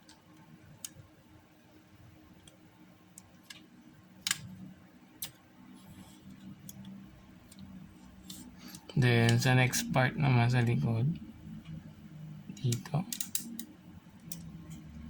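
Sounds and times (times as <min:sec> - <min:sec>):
plastic parts clicking: 0:02.4 - 0:04.5, 0:12.5 - 0:14.5.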